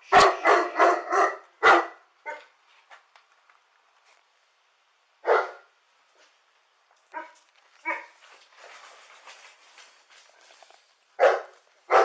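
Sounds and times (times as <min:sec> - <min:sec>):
dog barking: 0:00.0 - 0:02.5, 0:05.2 - 0:05.7, 0:07.1 - 0:08.2, 0:11.2 - 0:12.0.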